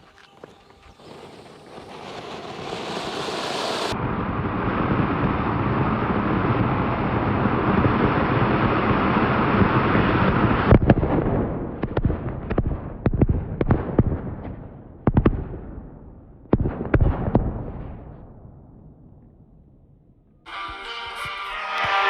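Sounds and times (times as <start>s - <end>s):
firework fountain hissing: 0.0s - 4.0s.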